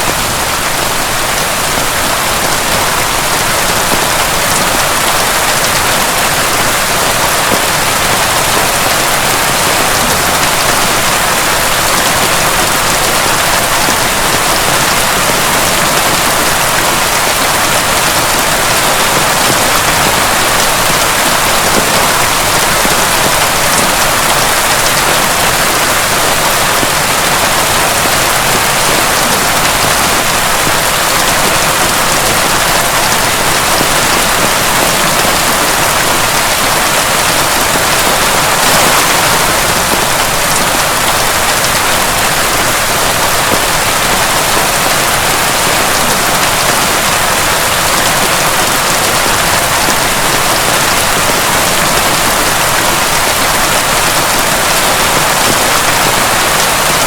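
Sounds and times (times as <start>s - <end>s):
heavy pounding rain: 0.0s - 57.0s.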